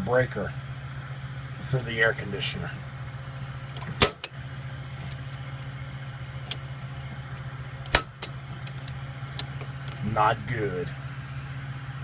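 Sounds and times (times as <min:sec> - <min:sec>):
steady low hum: 0:00.0 - 0:12.0
circuit breaker snapping: 0:03.7 - 0:04.4, 0:07.3 - 0:09.6.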